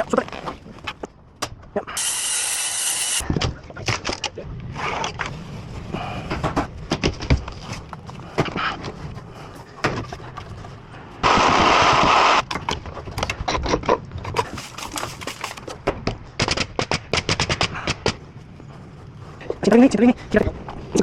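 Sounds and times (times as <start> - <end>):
construction knocks and bangs: 6.2 - 10.8, 15.6 - 18.3.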